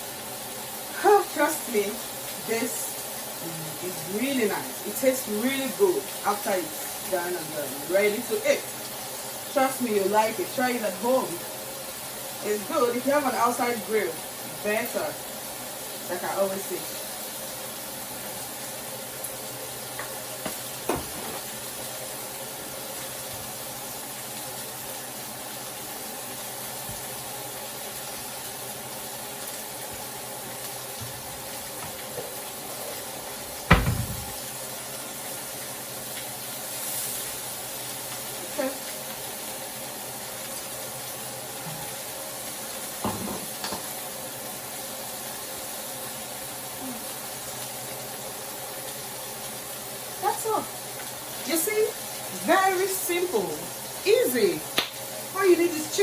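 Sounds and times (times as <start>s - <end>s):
chicken sizzling in a grill pan: 0.0s - 56.0s
short knocks: 33.6s - 34.4s.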